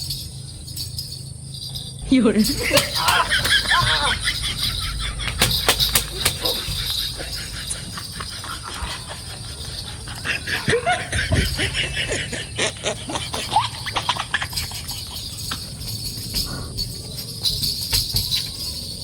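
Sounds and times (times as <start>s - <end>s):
people snickering: 2.1s - 17.2s.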